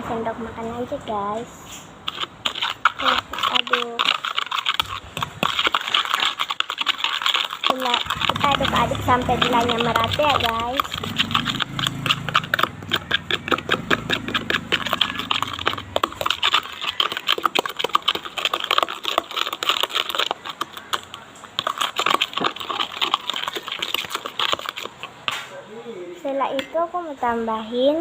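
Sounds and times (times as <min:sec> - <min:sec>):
stirrer scraping sugar in container: 0:02.0 - 0:25.5.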